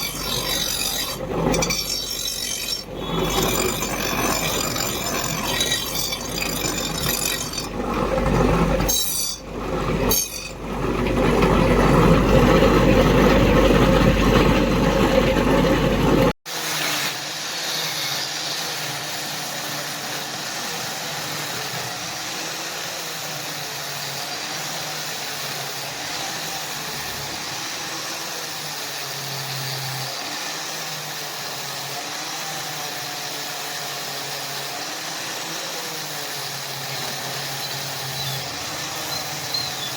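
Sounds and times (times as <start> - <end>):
loud machine hum: 0.0 - 16.4, 36.7 - 39.9.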